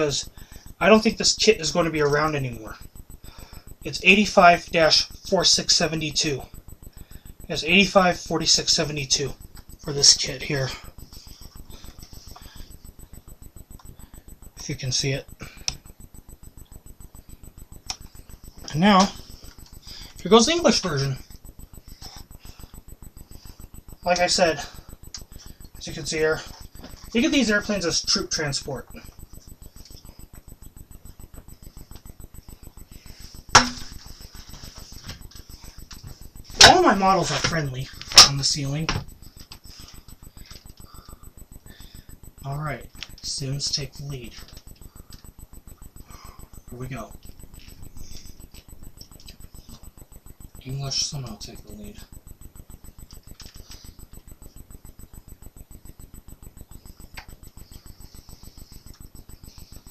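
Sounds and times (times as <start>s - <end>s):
rapid low pulsing: 0.0s - 59.9s
sharp knock with low ring: 33.6s - 34.0s.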